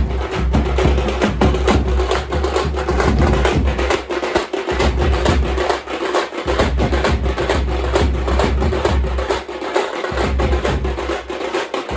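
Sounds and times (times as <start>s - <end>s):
deep low drum boom: 0.0s - 4.0s
drums beaten fast: 0.0s - 11.9s.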